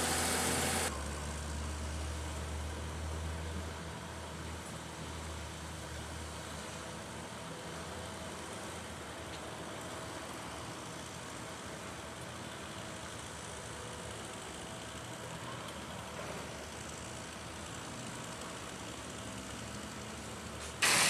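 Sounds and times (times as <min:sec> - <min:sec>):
heavy machine engine running: 0:00.0 - 0:01.2.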